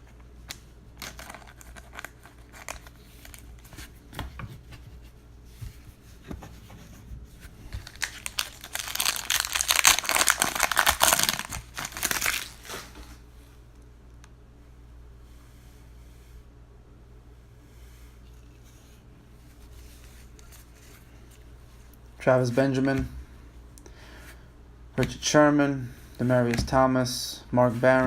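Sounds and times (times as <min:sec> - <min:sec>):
foil wrapper tearing and crinkling: 0:01.0 - 0:03.5, 0:07.8 - 0:13.0.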